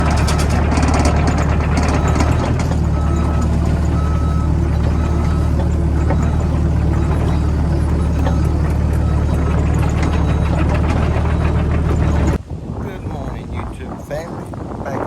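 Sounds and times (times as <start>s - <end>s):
heavy vehicle engine running: 0.0s - 12.4s
reversing alarm beeping: 0.0s - 12.4s.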